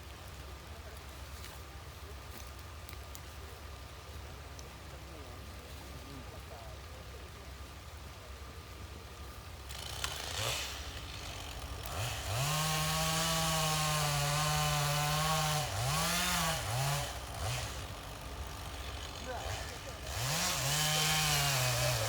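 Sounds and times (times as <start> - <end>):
chain saw cutting log: 9.6 - 22.0
harvester engine under load: 9.7 - 22.0.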